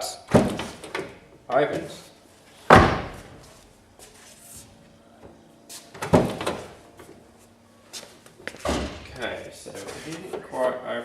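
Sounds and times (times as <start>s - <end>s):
car door shutting: 2.7s - 3.4s, 5.9s - 6.8s.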